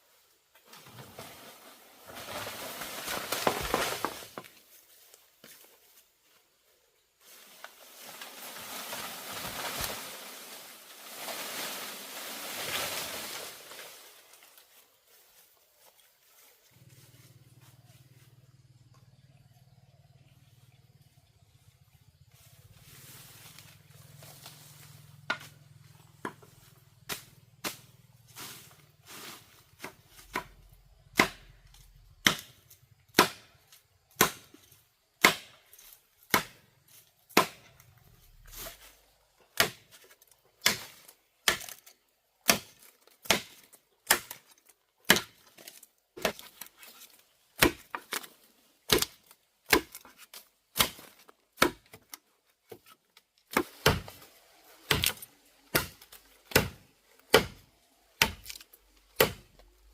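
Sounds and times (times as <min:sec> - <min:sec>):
blade chopping bamboo: 0:27.1 - 0:27.9, 0:29.8 - 0:31.6, 0:32.2 - 0:36.6, 0:37.3 - 0:37.8, 0:39.5 - 0:48.3, 0:48.9 - 0:59.7.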